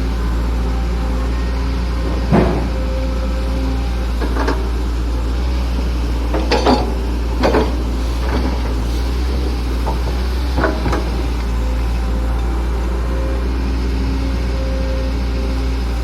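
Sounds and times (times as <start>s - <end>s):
diesel engine droning: 0.0s - 16.0s
excavator bucket clunks: 2.0s - 3.0s, 4.1s - 5.1s, 6.0s - 12.5s.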